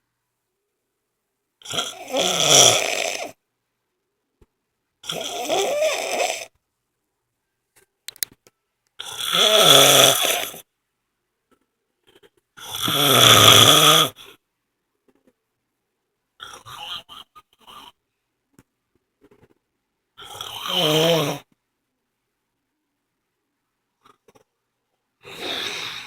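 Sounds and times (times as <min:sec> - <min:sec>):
woman snoring: 0:01.6 - 0:03.4, 0:05.0 - 0:06.5, 0:09.0 - 0:10.6, 0:12.6 - 0:14.4, 0:20.2 - 0:21.5, 0:25.2 - 0:26.0.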